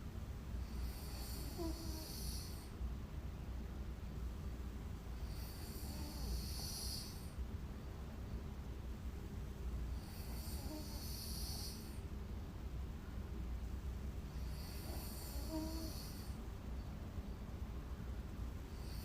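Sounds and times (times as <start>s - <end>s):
low steady rumble: 0.0s - 19.0s
woman snoring: 0.7s - 2.7s, 5.2s - 7.3s, 10.0s - 12.0s, 14.4s - 16.4s.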